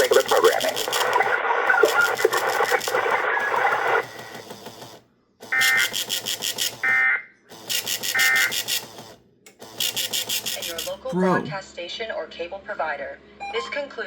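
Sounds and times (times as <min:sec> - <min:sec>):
warbling digital data tones: 0:00.0 - 0:03.8.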